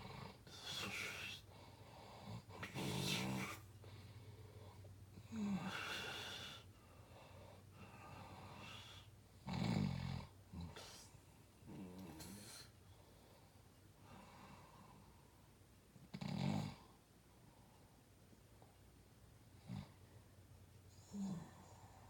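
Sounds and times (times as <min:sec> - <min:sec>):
quiet breathing: 0:00.0 - 0:09.5, 0:10.2 - 0:22.0
loud snoring: 0:02.1 - 0:03.6, 0:09.4 - 0:10.9, 0:16.1 - 0:16.9.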